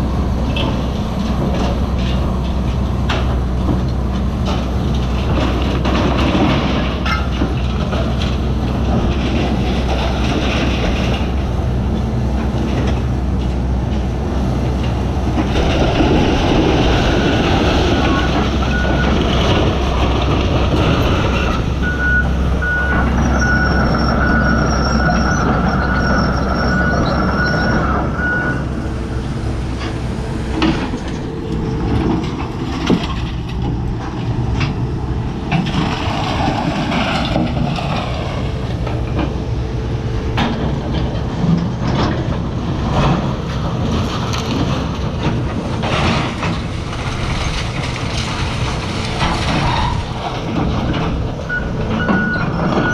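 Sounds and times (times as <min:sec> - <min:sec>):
excavator diesel engine running: 0:00.0 - 0:52.9
demolition knocks and cracks: 0:00.4 - 0:28.8, 0:29.8 - 0:39.5, 0:40.3 - 0:52.9
reversing alarm beeping: 0:17.0 - 0:19.2, 0:21.8 - 0:29.0, 0:51.5 - 0:52.9.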